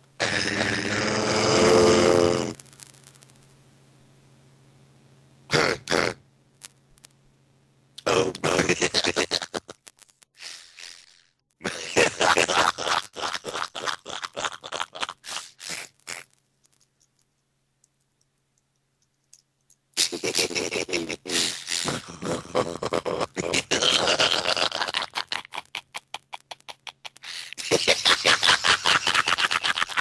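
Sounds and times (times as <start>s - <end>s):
garbled robotic voice call: 0.2s - 2.6s, 5.5s - 6.2s, 8.0s - 9.8s, 20.0s - 25.2s.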